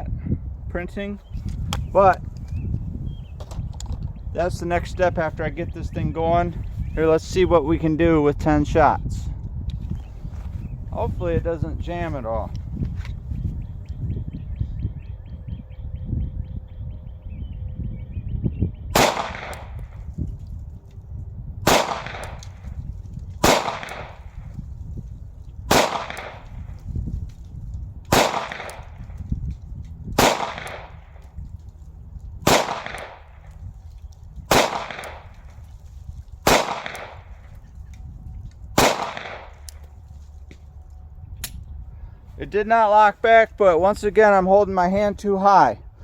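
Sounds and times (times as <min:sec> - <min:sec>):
pistol shots: 0:18.9 - 0:20.0, 0:21.6 - 0:22.7, 0:23.4 - 0:24.3, 0:25.7 - 0:26.7, 0:28.1 - 0:29.1, 0:30.2 - 0:31.1, 0:32.4 - 0:33.6, 0:34.5 - 0:35.4, 0:36.4 - 0:37.4, 0:38.8 - 0:39.8.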